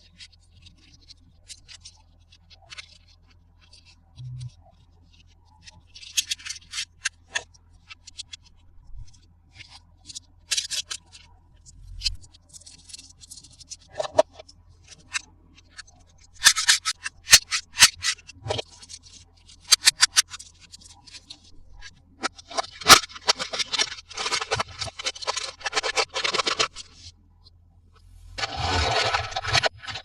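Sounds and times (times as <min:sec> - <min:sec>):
plastic toy parts clicking: 0:10.1 - 0:11.2, 0:12.0 - 0:27.1
packaging crinkling: 0:22.5 - 0:26.9.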